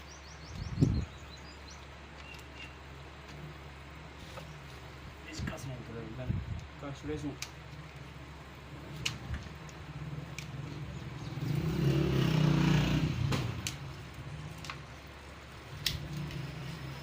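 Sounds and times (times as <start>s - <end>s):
vehicle engine: 7.3s - 17.0s.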